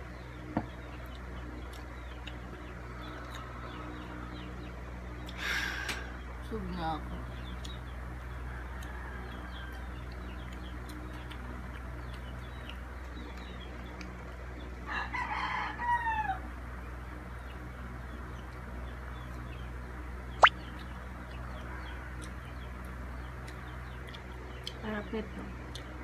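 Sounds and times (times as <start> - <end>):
steady low hum: 0.0 - 13.9
rooster crowing: 8.4 - 10.0, 14.9 - 16.5
faint small bird chirps: 20.3 - 24.9.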